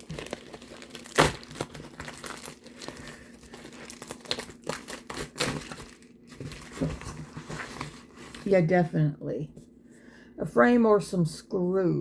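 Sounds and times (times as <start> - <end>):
sharp packaging crackle: 0.0 - 7.2
packaging crinkling and rustling: 0.0 - 8.6.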